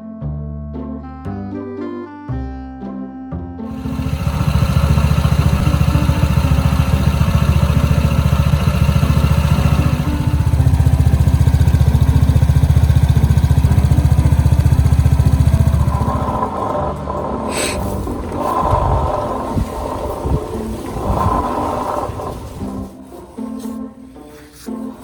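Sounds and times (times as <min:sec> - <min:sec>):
scooter engine running: 0:03.7 - 0:23.0.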